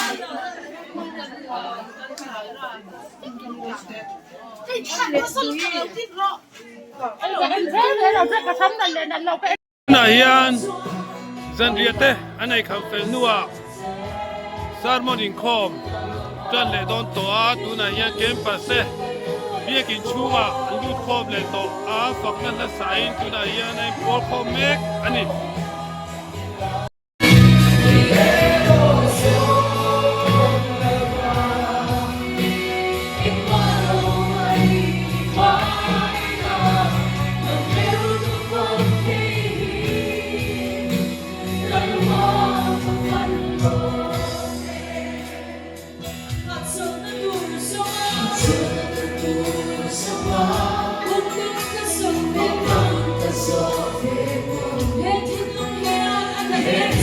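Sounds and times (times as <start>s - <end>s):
gospel choir singing: 9.9s - 57.0s
steady bass: 22.1s - 45.7s.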